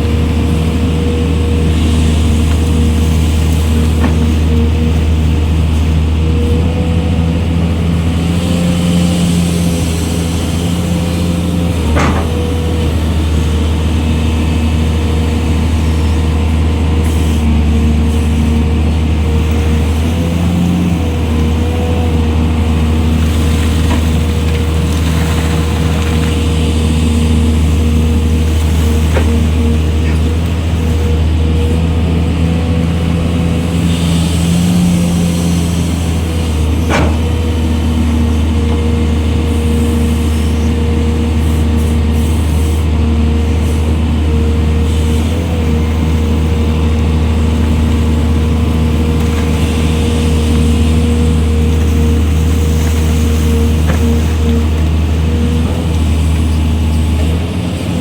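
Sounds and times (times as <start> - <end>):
excavator diesel engine: 0.0 - 58.0
steady whining tone: 0.0 - 58.0
sharp knocks: 11.8 - 12.7, 36.8 - 37.5.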